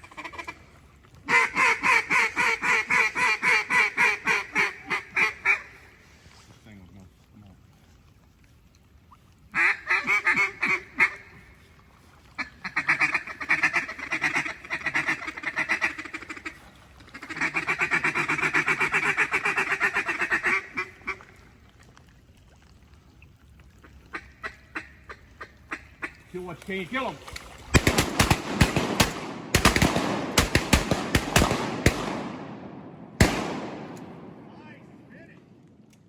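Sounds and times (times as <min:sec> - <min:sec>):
duck calls quacking: 0:00.0 - 0:00.6, 0:01.3 - 0:06.0, 0:09.6 - 0:11.5, 0:12.4 - 0:21.2, 0:24.1 - 0:26.3.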